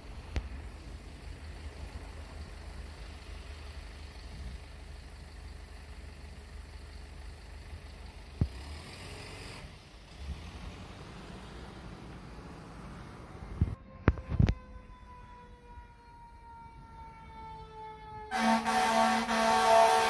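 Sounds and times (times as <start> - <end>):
fire truck engine idling: 0.0 - 8.4.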